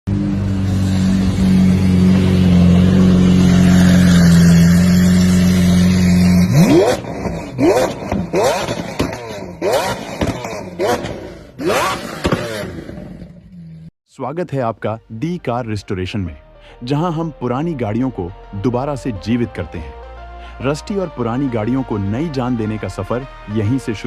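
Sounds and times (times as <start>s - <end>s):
sports car engine revving: 0.1s - 13.9s.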